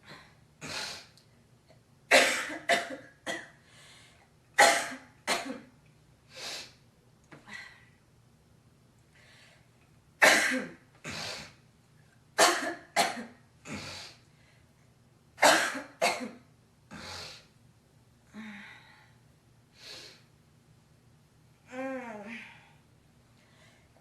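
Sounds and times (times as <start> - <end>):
girl coughing: 2.1 - 3.6, 4.6 - 5.7, 10.2 - 10.8, 12.4 - 13.4, 15.4 - 16.4
soft breaths: 9.1 - 9.9, 21.7 - 24.0.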